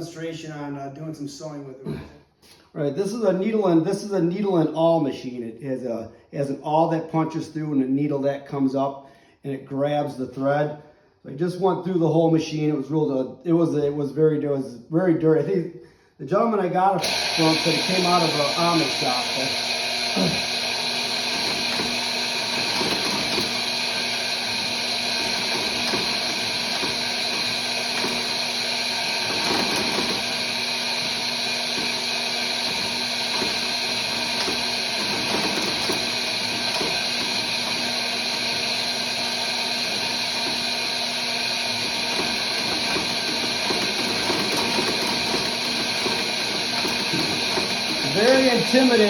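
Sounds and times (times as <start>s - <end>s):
electric motor humming: 17.0s - 49.0s.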